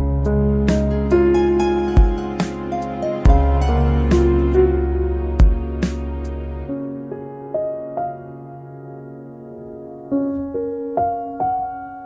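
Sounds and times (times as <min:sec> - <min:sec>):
deep bass: 0:00.0 - 0:06.7
soft new-age instrumental music: 0:00.0 - 0:12.0.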